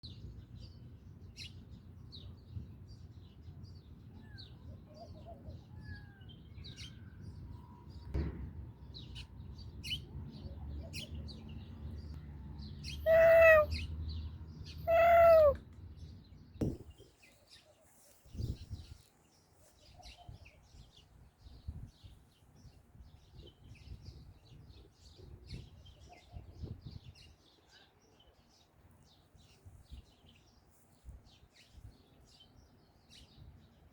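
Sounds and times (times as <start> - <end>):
faint bird chirps: 12.9 - 13.9, 14.8 - 15.6
cat meowing: 13.0 - 13.8, 14.8 - 15.6.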